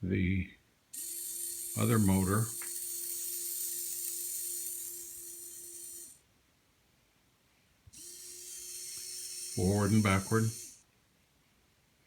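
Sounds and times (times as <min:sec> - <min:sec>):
small motor whining: 0:01.0 - 0:06.2, 0:07.9 - 0:10.8.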